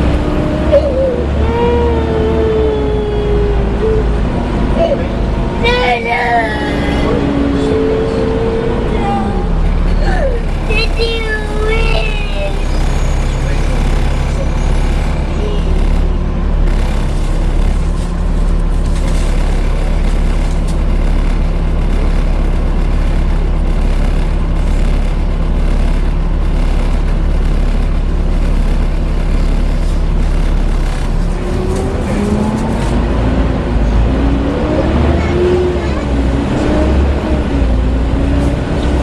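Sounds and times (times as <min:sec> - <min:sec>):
bus engine running: 0:00.0 - 0:39.0
engine cooling fan rushing: 0:00.0 - 0:39.0.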